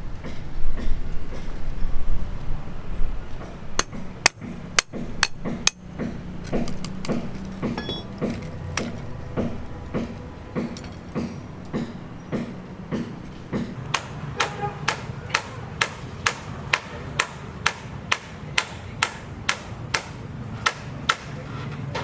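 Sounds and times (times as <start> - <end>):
hammer blows: 3.4 - 22.0.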